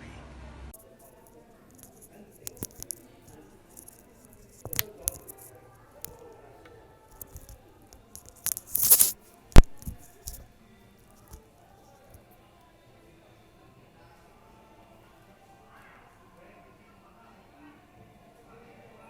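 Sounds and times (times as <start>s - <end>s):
handling rustling and clicks: 0.8s - 6.2s, 7.1s - 10.5s.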